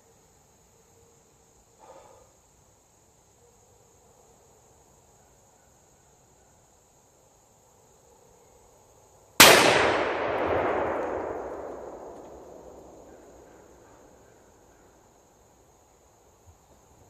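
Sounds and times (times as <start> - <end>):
revolver gunshot with echo: 9.4 - 13.3.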